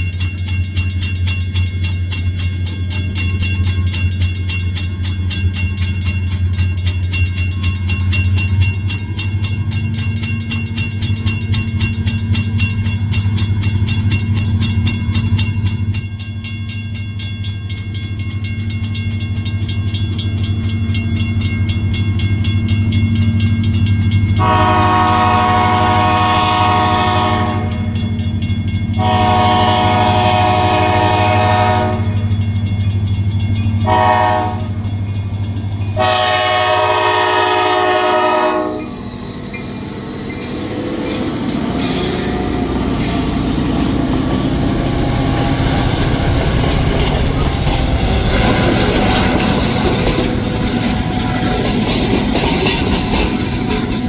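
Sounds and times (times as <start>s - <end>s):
diesel locomotive engine running: 17.7s - 54.0s
train horn blasts: 24.4s - 28.0s, 29.0s - 32.4s, 33.8s - 34.9s, 36.0s - 43.5s, 48.3s - 54.0s
freight cars rumbling and clattering: 38.8s - 54.0s.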